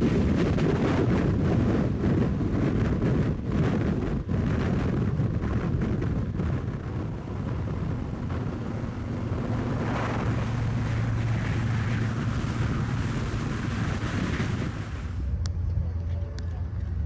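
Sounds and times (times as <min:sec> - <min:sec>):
wind noise: 0:00.0 - 0:17.0
car engine running: 0:06.7 - 0:15.3.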